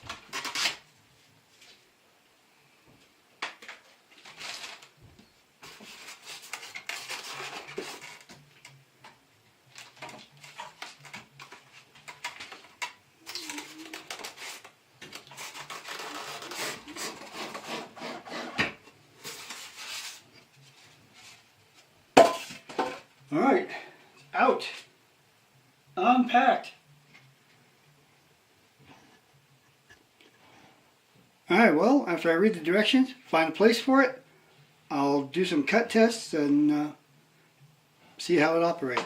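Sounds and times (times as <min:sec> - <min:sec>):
packaging rubbing and scraping: 0:00.0 - 0:00.9, 0:04.1 - 0:05.0, 0:05.6 - 0:08.5, 0:09.8 - 0:21.5.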